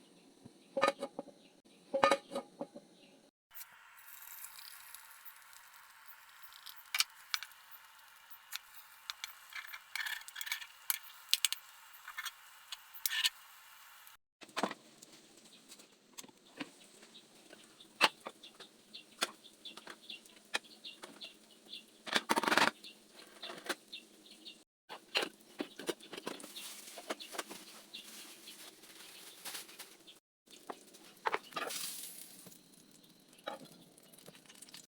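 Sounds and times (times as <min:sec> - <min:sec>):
kitchen clicks and clatter: 0:06.4 - 0:12.4.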